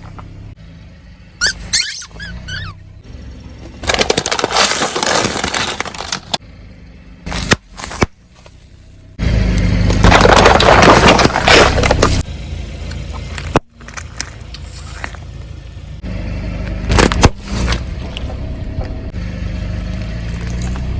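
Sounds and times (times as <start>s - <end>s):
car engine humming: 0.0s - 20.9s
sharp cracks: 3.8s - 6.4s, 9.8s - 12.2s
tyres crushing bottles: 3.8s - 6.4s, 9.9s - 12.2s.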